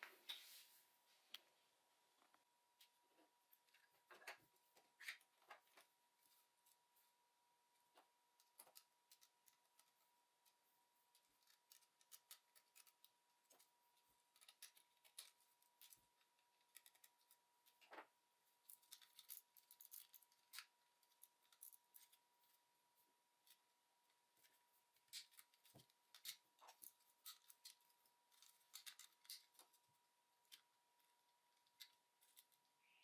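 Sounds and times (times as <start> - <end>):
plastic parts clicking and scraping: 8.4 - 22.2, 24.4 - 32.7.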